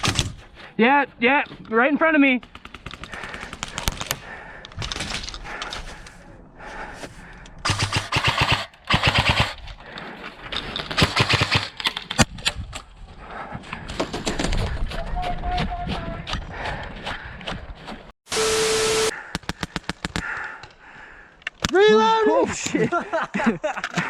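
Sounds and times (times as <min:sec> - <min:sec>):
airsoft guns firing bursts: 0:07.7 - 0:09.6, 0:11.0 - 0:11.8.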